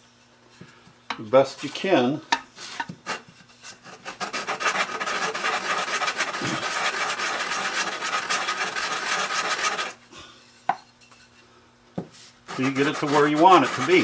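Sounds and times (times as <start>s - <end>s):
sandpaper rasping on wood: 2.6s - 10.0s, 12.4s - 14.0s.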